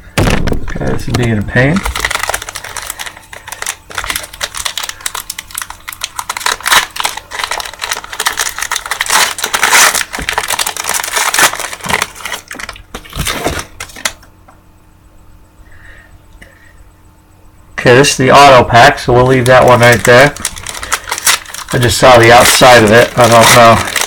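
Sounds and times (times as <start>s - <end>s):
foil wrapper crinkling and tearing: 0.2s - 14.2s, 19.2s - 24.0s.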